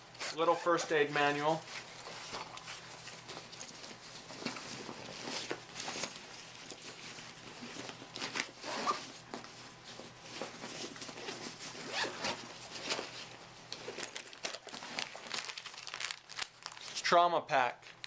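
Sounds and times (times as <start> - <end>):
zipper being pulled: 8.6 - 9.1, 11.2 - 12.5.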